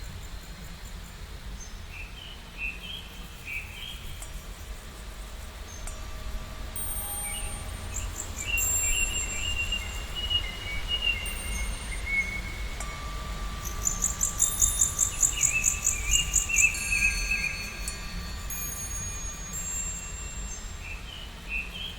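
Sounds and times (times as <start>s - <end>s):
steady low rumble: 4.4s - 20.8s.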